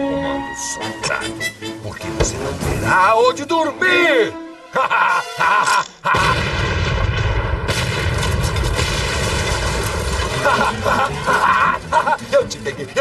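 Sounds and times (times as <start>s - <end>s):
music: 0.0s - 6.1s, 9.8s - 13.0s
cartoon explosion rumble: 6.1s - 10.7s.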